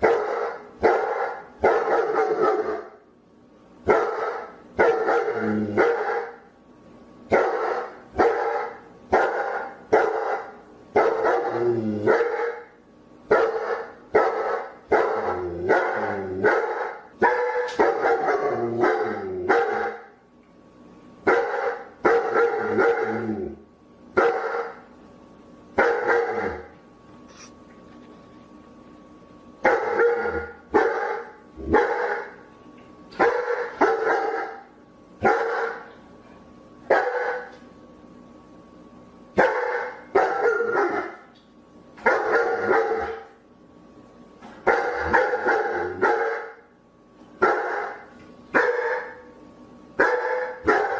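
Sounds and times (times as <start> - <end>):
dog barking: 0.0 - 3.0, 3.9 - 6.4, 7.3 - 12.7, 13.3 - 20.1, 21.3 - 23.2, 24.2 - 24.8, 25.8 - 26.7, 29.6 - 32.4, 33.2 - 35.9, 36.9 - 37.6, 39.4 - 41.2, 42.0 - 43.3, 44.6 - 46.7, 47.4 - 49.3, 50.0 - 50.9.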